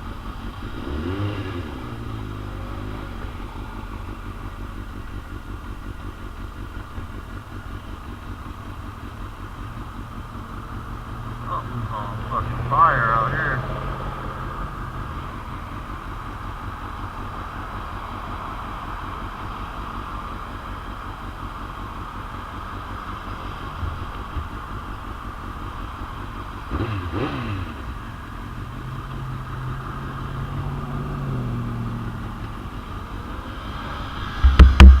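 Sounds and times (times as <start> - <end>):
motorcycle engine running: 0.0 - 35.0
wind noise on microphone: 34.4 - 35.0.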